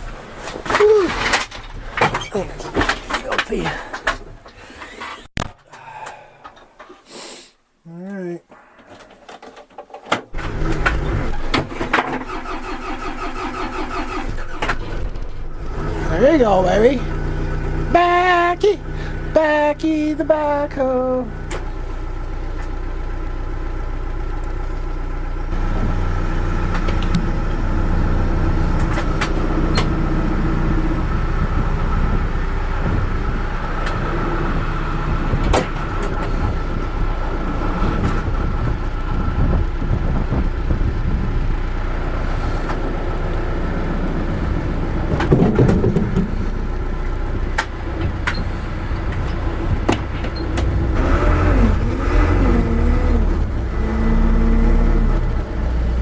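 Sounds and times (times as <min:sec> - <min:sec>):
backhoe diesel engine running: 0:00.0 - 0:06.7, 0:10.3 - 0:56.0.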